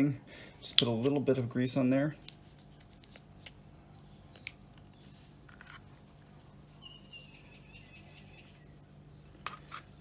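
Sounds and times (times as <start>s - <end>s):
steady low hum: 0.0s - 10.0s
faint high chirp: 6.7s - 9.0s.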